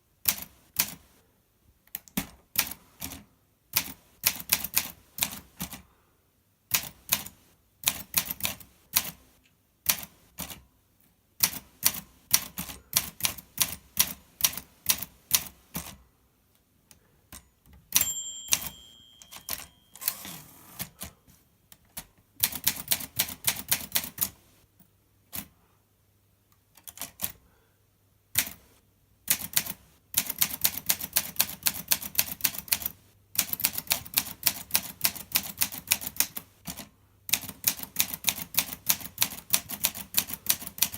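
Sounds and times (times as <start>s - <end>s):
typewriter bell ringing: 17.4s - 20.5s
typewriter carriage rasp: 19.3s - 21.0s.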